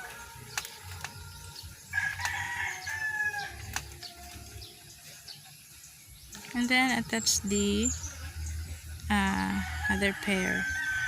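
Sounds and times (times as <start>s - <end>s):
rooster crowing: 1.9s - 3.6s, 9.3s - 11.0s.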